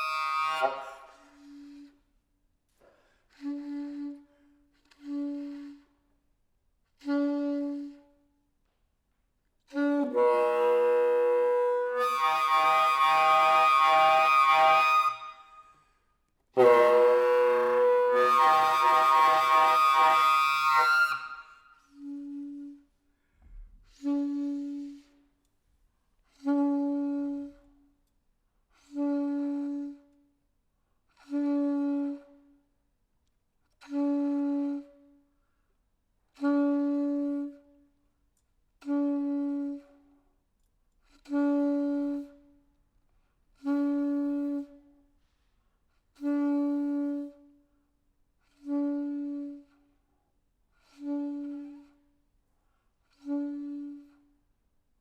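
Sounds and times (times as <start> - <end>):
solo saxophone: 0.0 - 2.2, 2.8 - 6.2, 6.9 - 8.8, 9.6 - 15.4, 16.5 - 23.0, 23.8 - 25.5, 26.2 - 28.1, 28.7 - 30.4, 31.1 - 32.7, 33.6 - 35.2, 36.3 - 38.0, 38.8 - 40.3, 41.0 - 42.7, 43.6 - 45.1, 46.0 - 47.8, 48.4 - 50.0, 50.7 - 52.3, 53.0 - 54.4.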